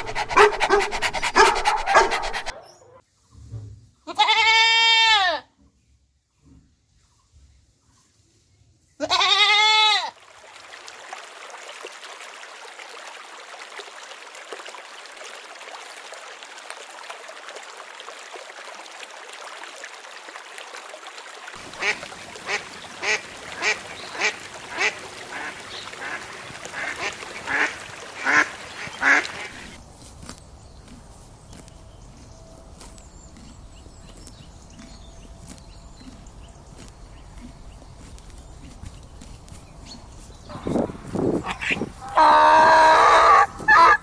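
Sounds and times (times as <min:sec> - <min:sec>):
drawn-out animal call: 0:21.6 - 0:29.8
duck quacks: 0:21.6 - 0:29.8.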